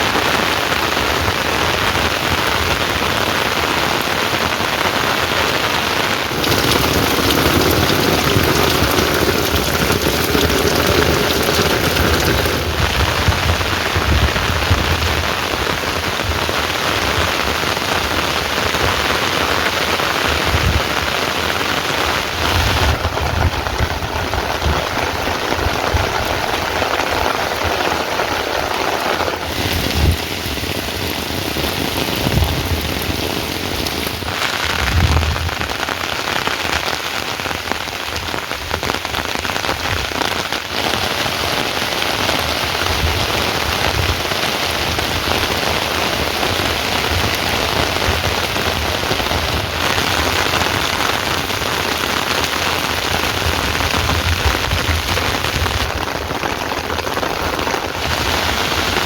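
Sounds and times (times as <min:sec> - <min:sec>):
heavy rain pouring: 0:00.0 - 0:59.0
low rumbles: 0:06.3 - 0:15.7.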